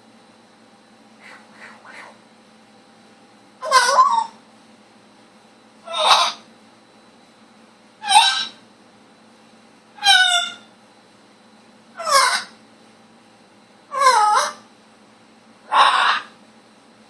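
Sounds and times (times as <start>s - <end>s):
macaw calling: 3.6s - 4.4s, 5.9s - 6.4s, 8.0s - 8.6s, 10.0s - 10.7s, 12.0s - 12.6s, 13.9s - 14.6s, 15.7s - 16.4s.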